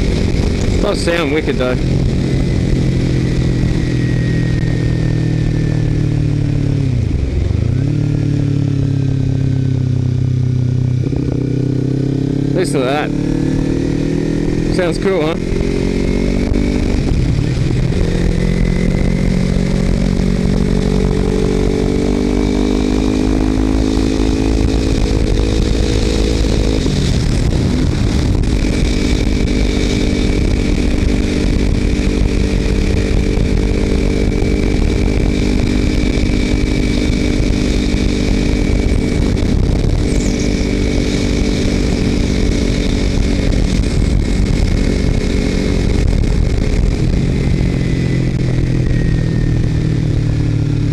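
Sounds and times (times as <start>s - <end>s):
motorcycle engine running: 0.0s - 50.9s
wind rush on microphone: 0.0s - 50.9s.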